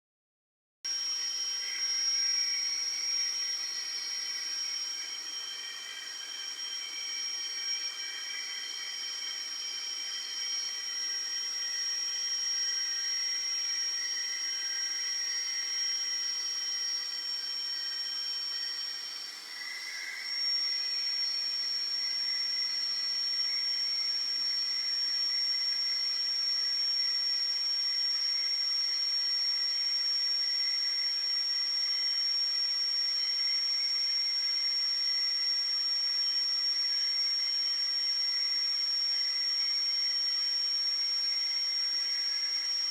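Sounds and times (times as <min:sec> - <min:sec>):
printer high-pitched whine: 0:00.9 - 0:42.9.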